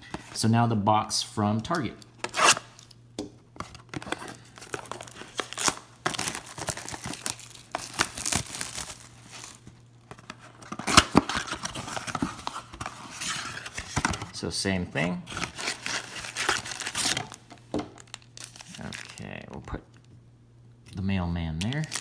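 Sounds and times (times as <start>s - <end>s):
sharp ripping of wrapping: 2.3s - 2.7s, 4.2s - 9.7s, 15.3s - 19.4s, 21.6s - 22.0s
plastic wrapping crinkling: 3.8s - 14.2s, 15.2s - 20.0s, 21.6s - 22.0s.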